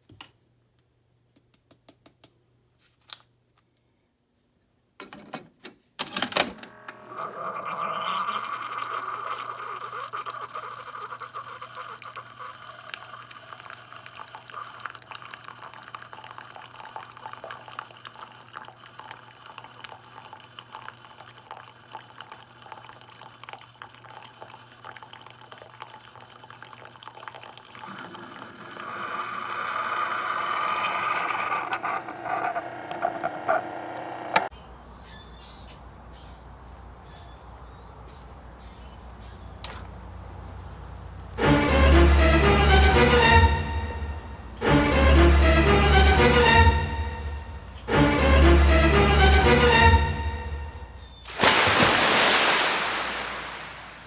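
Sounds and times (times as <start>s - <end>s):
liquid running: 7.0s - 34.5s, 51.2s - 54.0s.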